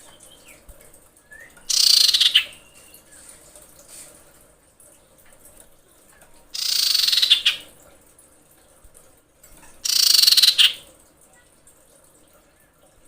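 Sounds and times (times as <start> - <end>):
bird rattling calls: 1.7 - 3.0, 6.6 - 7.7, 9.8 - 10.8.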